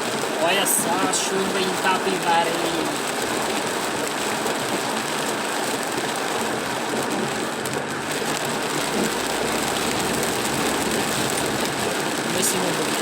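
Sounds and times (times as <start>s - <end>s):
heavy rain on car: 0.0s - 13.0s
tyres hissing on wet road: 8.1s - 13.0s.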